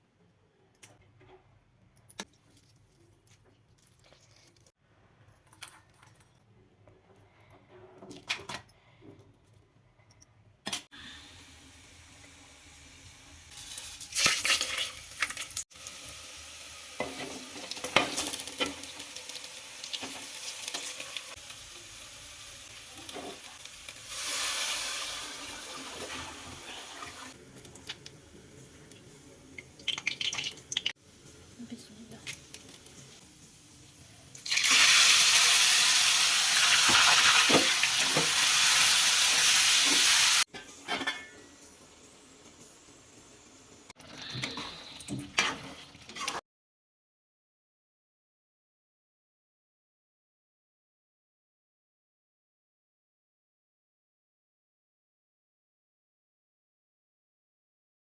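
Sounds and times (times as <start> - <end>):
food sizzling in a pot: 11.0 - 46.4
utensils clinking against pot: 40.5 - 41.4.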